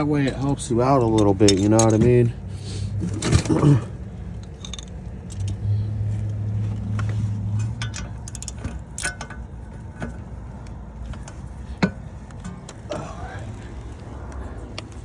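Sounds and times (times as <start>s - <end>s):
steady low hum: 0.0s - 15.0s
steel hand tools clinking: 0.2s - 2.2s.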